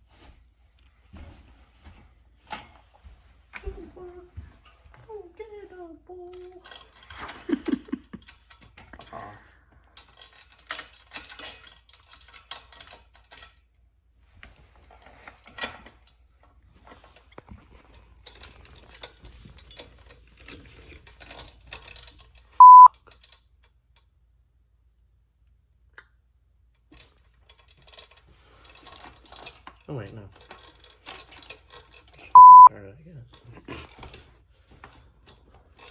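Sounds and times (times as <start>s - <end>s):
metal parts and tools rattling: 6.4s - 9.1s, 10.0s - 13.6s, 16.9s - 23.4s, 26.9s - 32.3s, 33.3s - 35.9s
loud electronic beep: 22.6s - 22.9s, 32.4s - 32.7s.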